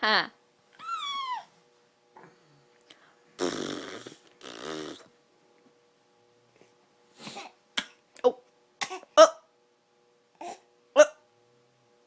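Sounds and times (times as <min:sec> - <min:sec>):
baby coughing: 0:08.8 - 0:09.3.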